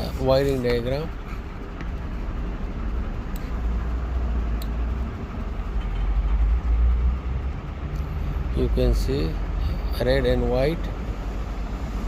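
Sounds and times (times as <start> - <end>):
low background rumble: 0.0 - 12.0.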